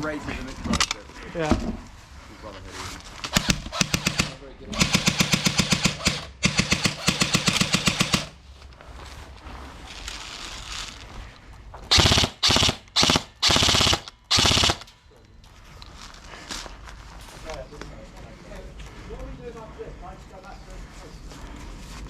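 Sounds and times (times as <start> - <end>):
airsoft guns firing full-auto: 3.3 - 8.4, 11.9 - 14.9.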